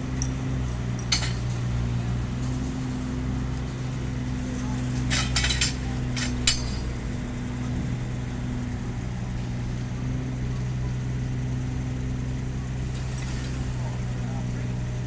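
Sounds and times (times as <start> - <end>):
engine humming steadily: 0.0 - 15.0
sharp metallic clinks: 0.1 - 1.8, 5.0 - 7.0.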